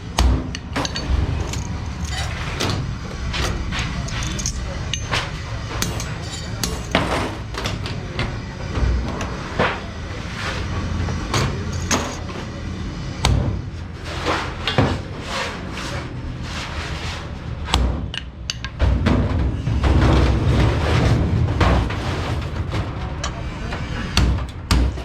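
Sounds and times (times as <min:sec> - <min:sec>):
steady low rumble: 0:00.0 - 0:07.0, 0:18.7 - 0:25.0
sheet metal clanking: 0:00.0 - 0:12.6, 0:13.2 - 0:25.0.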